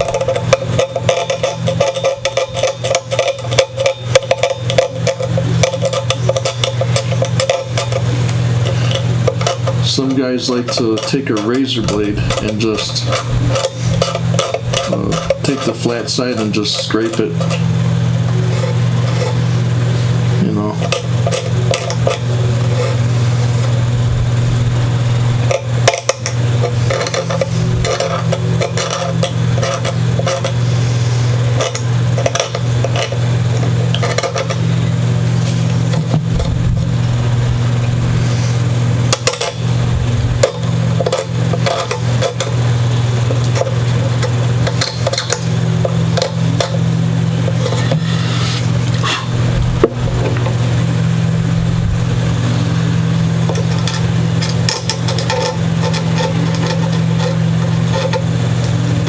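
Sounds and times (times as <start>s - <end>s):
steady low hum: 0.0s - 59.0s
blade scraping glue: 4.6s - 17.7s, 47.5s - 49.4s.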